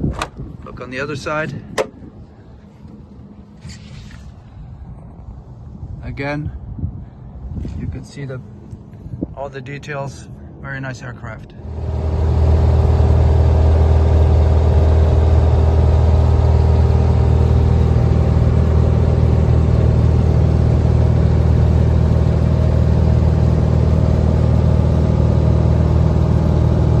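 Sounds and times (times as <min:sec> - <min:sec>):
aircraft piston engine running: 0:11.6 - 0:27.0.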